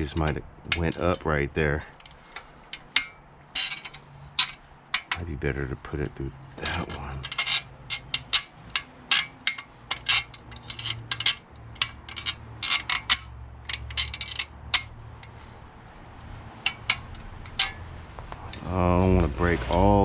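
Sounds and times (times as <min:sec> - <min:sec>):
metal clinks and rattles: 0:01.9 - 0:05.2, 0:06.6 - 0:15.8, 0:16.5 - 0:18.0.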